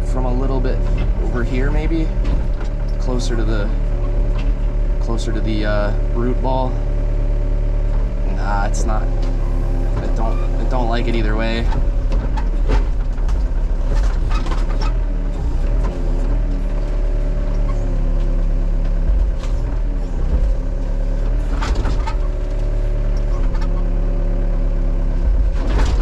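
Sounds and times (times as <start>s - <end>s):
excavator engine with hydraulic whine: 0.0s - 26.0s
sharp knocks and cracks: 11.6s - 15.1s, 25.2s - 26.0s.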